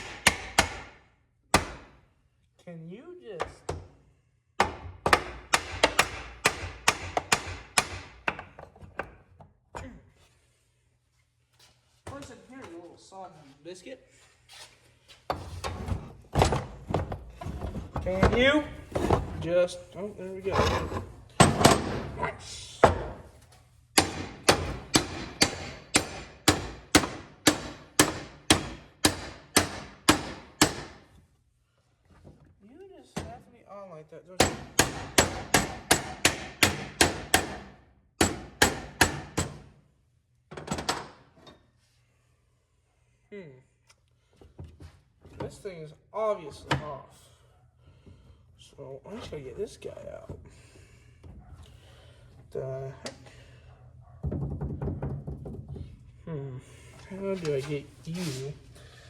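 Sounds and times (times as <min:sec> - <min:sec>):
hammer striking metal part: 0:24.0 - 0:31.0, 0:34.4 - 0:39.6.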